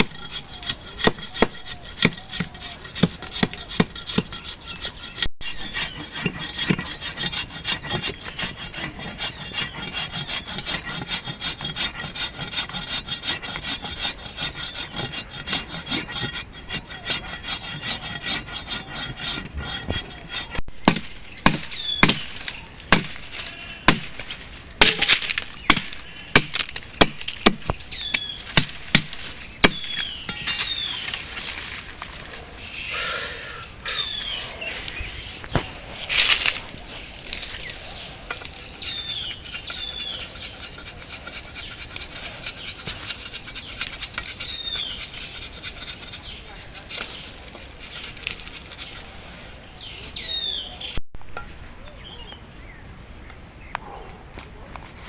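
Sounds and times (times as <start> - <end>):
wood rasping by hand: 0.0 - 32.5, 34.9 - 51.0
falling bird chirps: 33.9 - 51.0.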